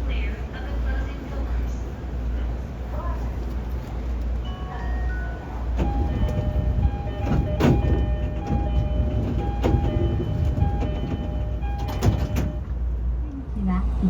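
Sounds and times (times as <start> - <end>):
train low rumble: 0.0 - 14.0
wheels clacking over rail joints: 5.8 - 12.6.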